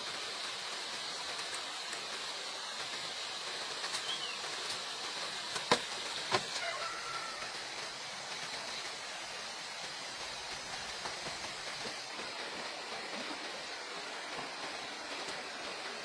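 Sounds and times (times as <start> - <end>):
background hiss: 0.0 - 16.0
sharp knocks: 5.6 - 6.6.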